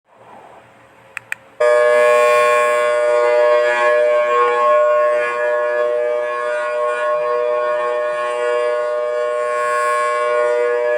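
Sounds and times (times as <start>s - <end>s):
short clicks: 1.1s - 1.5s
steady siren chord: 1.6s - 10.9s.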